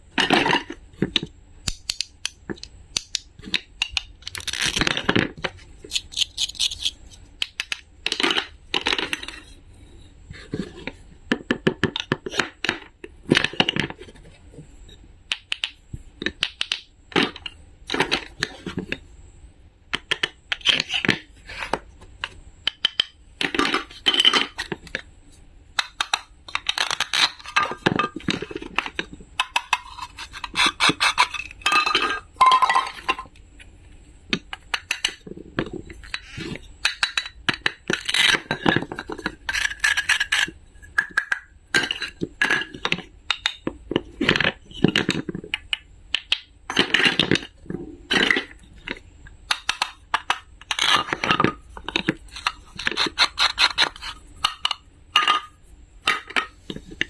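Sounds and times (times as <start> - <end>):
small hard objects clinking: 29.4 - 33.3.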